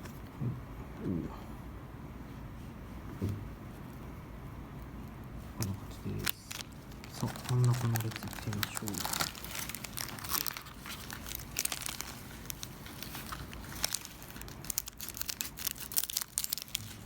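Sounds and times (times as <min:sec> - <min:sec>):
card pack wrappers crinkling and tearing: 0:05.6 - 0:17.0
cards being handled: 0:05.6 - 0:17.0.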